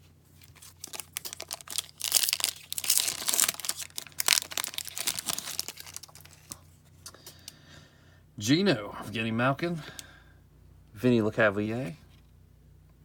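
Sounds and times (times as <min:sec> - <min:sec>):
foil wrapper tearing and crinkling: 0:00.4 - 0:06.6.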